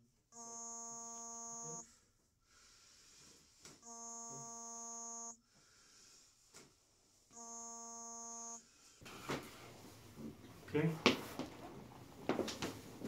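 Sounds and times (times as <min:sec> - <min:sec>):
electronic buzzer tones: 0:00.3 - 0:01.9, 0:03.8 - 0:05.4, 0:07.3 - 0:08.6.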